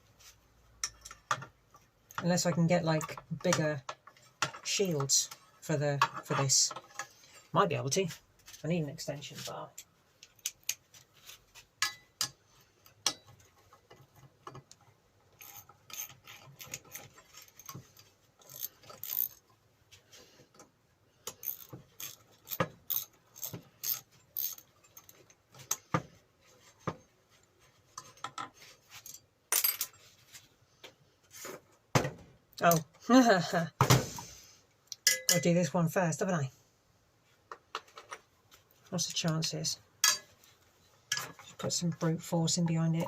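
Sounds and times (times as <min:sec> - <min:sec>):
metal hand tools clinking: 0:35.0 - 0:35.5.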